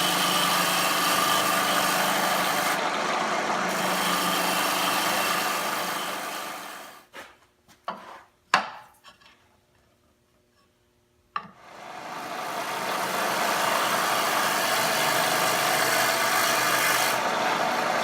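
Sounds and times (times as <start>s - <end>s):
lathe motor hum: 0.0s - 7.0s, 11.7s - 18.0s
lathe tool scraping wood: 0.0s - 7.0s, 11.7s - 18.0s.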